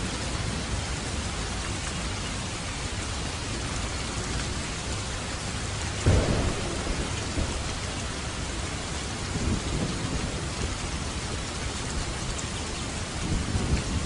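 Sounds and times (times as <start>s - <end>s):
steady rain hiss: 0.0s - 14.0s
thunder rumble: 6.0s - 14.0s.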